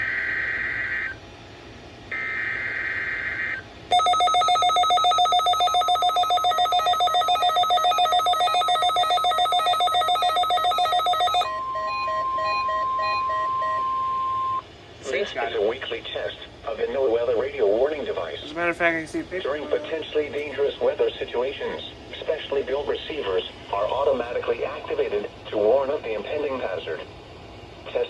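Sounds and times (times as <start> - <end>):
steady alarm tone: 2.1 - 14.6
rapid electronic alert beeping: 3.9 - 14.6.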